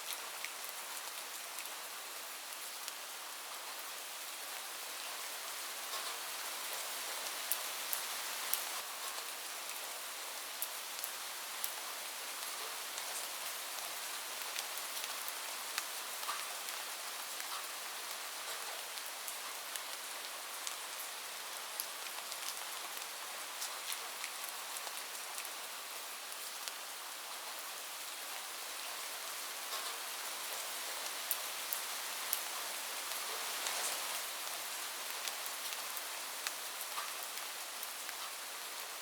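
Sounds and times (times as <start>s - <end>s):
heavy rain on a roof: 0.0s - 39.0s.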